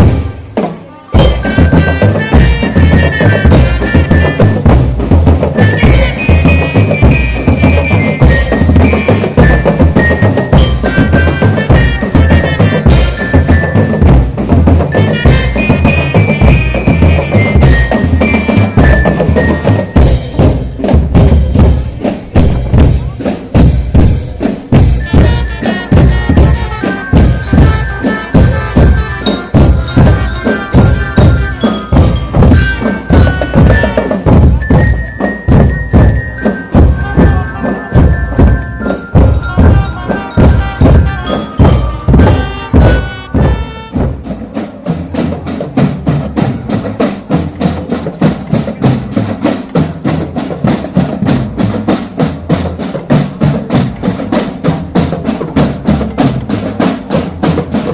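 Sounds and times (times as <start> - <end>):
marching drums: 0.0 - 57.9
bell-like melody: 1.0 - 44.7.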